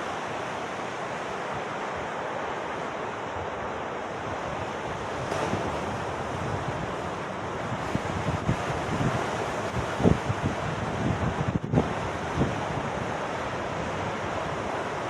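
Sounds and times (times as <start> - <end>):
surf washing on shore: 0.0 - 15.0
wind buffeting microphone: 4.2 - 14.8.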